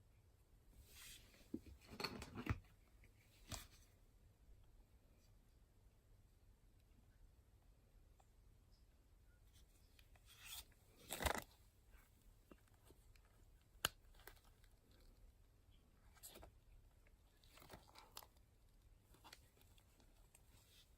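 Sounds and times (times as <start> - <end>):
faint rustles and scrapes: 0.8 - 4.0, 9.4 - 20.9.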